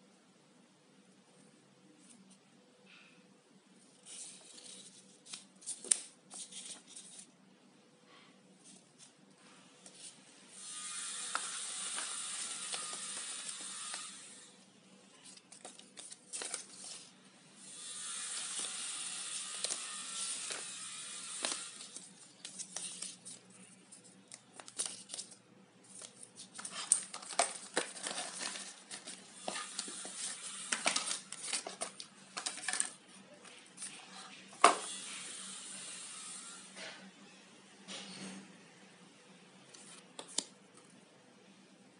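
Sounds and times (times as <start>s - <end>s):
scraping hiss of plastic packaging: 10.0s - 14.5s, 16.4s - 23.4s, 26.4s - 32.8s
clicks and rustles of packaging: 21.4s - 34.0s.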